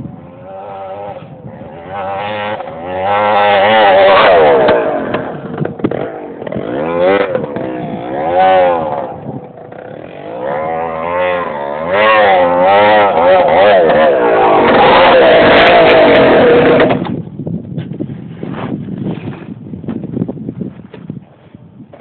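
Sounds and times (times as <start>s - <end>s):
two-stroke engine revving: 0.0s - 17.2s.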